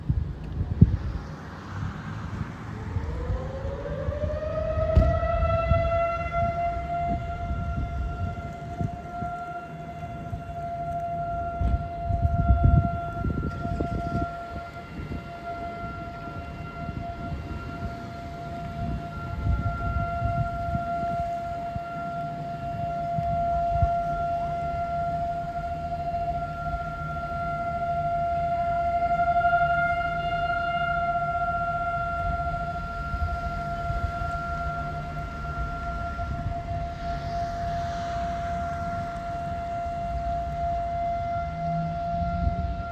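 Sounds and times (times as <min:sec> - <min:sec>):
warning siren wailing: 0:00.0 - 0:42.9
wind rumble on microphone: 0:00.0 - 0:42.9.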